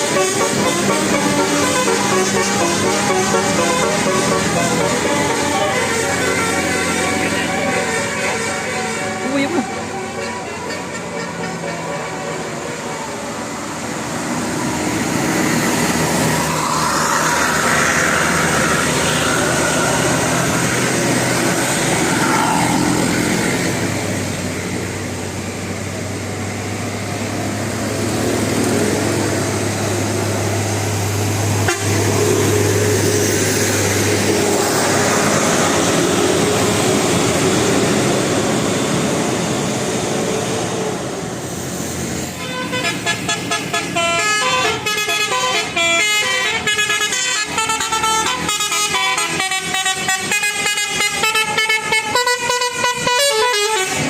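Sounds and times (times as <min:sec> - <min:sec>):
steady horn tone: 0:00.0 - 0:13.1, 0:31.5 - 0:32.8, 0:42.4 - 0:54.0
heavy road traffic: 0:00.0 - 0:54.0.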